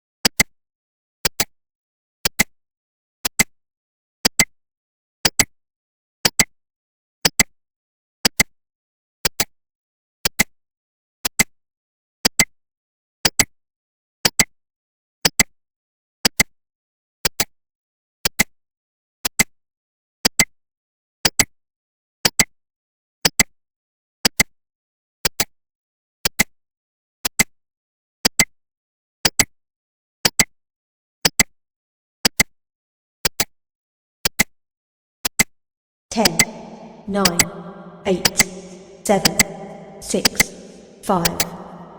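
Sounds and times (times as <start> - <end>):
clock ticking double clicks: 36.1 - 41.9.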